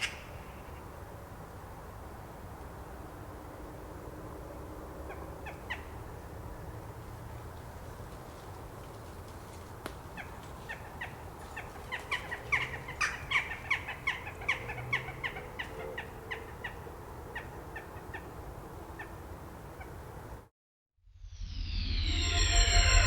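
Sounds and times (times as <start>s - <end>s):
jackdaws calling: 10.1s - 18.3s.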